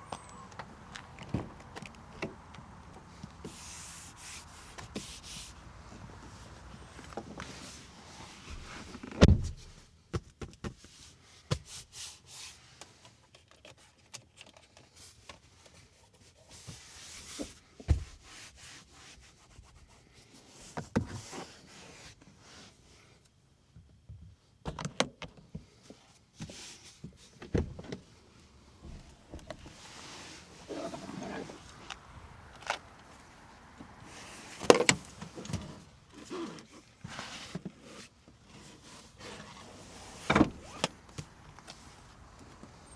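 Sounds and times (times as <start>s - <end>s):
soft rubbing: 0.1s - 7.8s, 28.3s - 42.9s
clicks and knocks on car trim: 28.8s - 35.7s.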